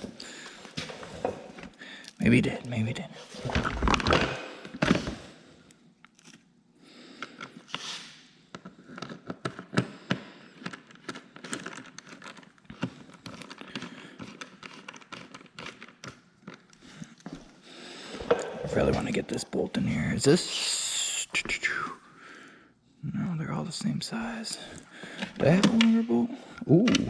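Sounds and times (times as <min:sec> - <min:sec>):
small parts and tools clicking: 0:08.5 - 0:17.3.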